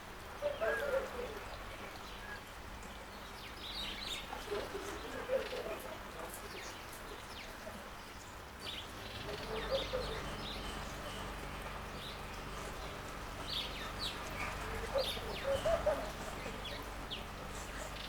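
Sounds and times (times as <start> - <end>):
fountain water trickling: 0.0 - 18.0
bird clucking calls: 13.4 - 18.0.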